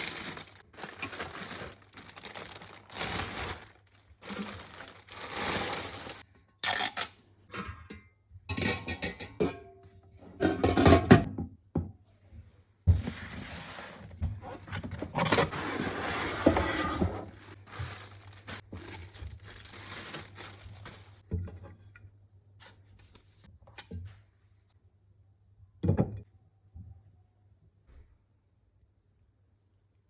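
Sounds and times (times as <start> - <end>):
packaging rustling and tearing: 0.0 - 6.2, 13.2 - 21.2.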